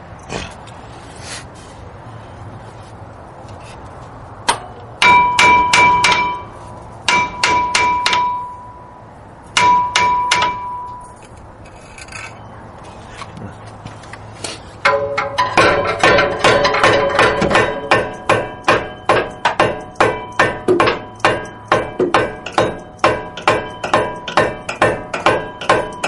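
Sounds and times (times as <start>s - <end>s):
hammer striking brake disc: 4.4s - 11.4s, 14.8s - 26.0s.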